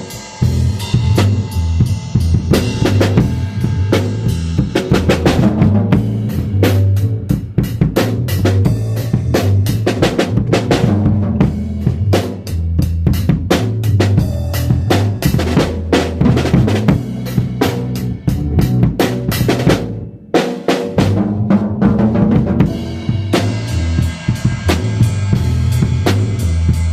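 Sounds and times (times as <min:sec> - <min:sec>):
drum kit beat: 0:00.0 - 0:26.9
sustained deep bass: 0:00.4 - 0:20.2, 0:21.0 - 0:26.9.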